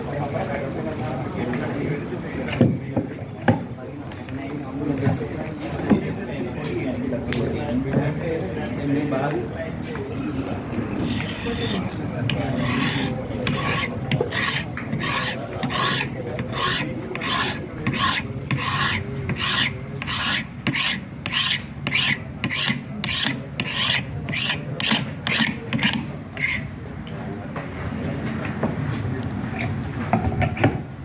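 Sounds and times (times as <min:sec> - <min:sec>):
hand tool rasping: 0:10.9 - 0:26.7.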